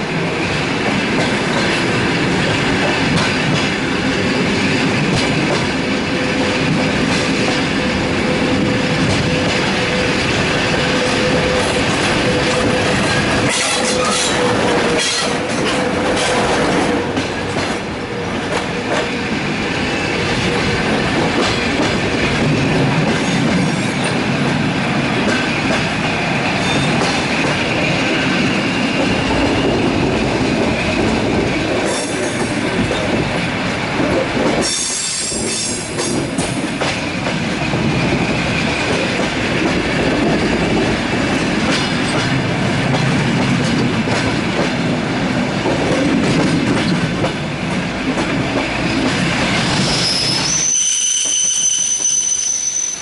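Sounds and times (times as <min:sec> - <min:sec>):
train rumbling on rails: 0:00.0 - 0:53.0
faint steady squeal: 0:49.8 - 0:53.0.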